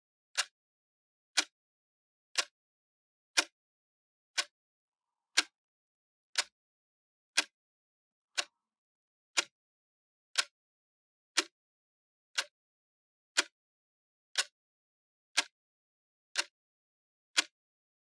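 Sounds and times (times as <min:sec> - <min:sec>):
clock ticking: 0:05.4 - 0:05.6.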